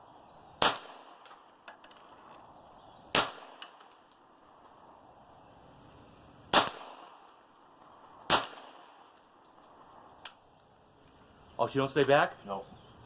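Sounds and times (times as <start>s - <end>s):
gunshot with echo: 3.1s - 3.6s, 6.5s - 7.1s, 8.3s - 8.8s.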